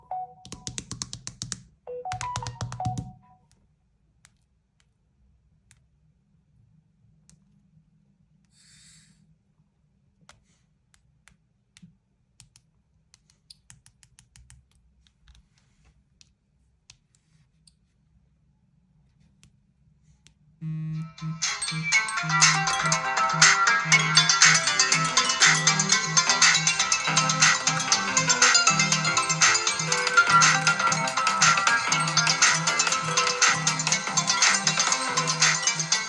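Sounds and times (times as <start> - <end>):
phone ringtone notes: 0.0 - 0.6, 1.9 - 3.4, 21.0 - 36.0.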